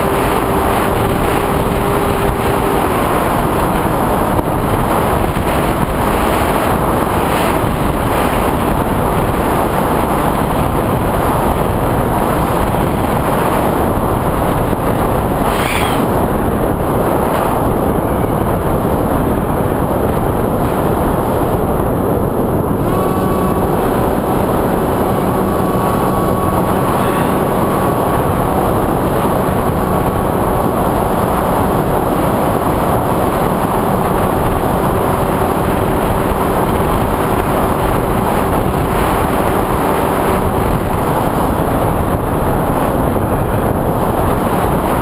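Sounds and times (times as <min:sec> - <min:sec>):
wind rush: 0:00.0 - 0:45.0
drone motor noise: 0:15.0 - 0:18.5, 0:22.9 - 0:28.9.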